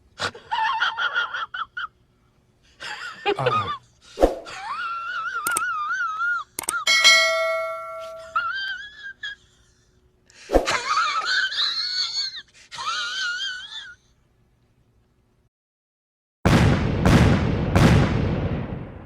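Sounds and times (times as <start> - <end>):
bell-like ding: 6.9 - 8.4.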